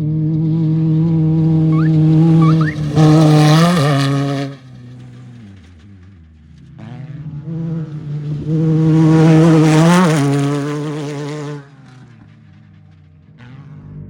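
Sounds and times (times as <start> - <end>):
vehicle engine passing at speed: 0.4 - 5.5, 6.8 - 12.4.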